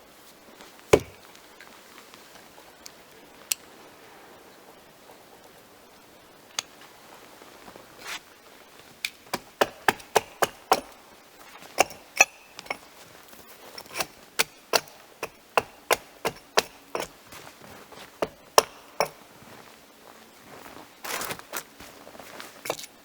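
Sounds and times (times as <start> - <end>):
blade chopping wood: 0.9 - 1.3, 9.1 - 11.0, 11.7 - 12.8, 13.8 - 17.2, 18.2 - 19.2, 22.7 - 22.9.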